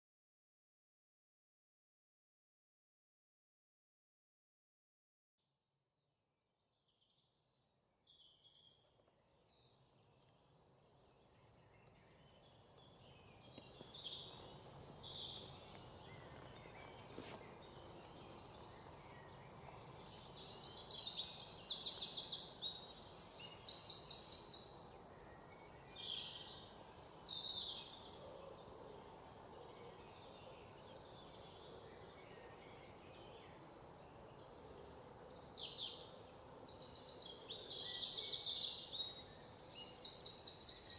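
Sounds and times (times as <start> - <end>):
birds singing and calling: 10.9 - 40.9.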